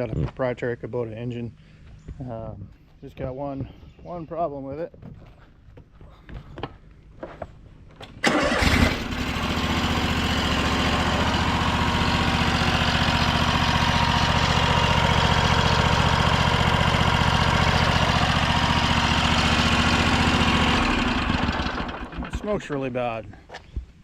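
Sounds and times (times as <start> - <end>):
engine cranking and idling: 8.0 - 23.0.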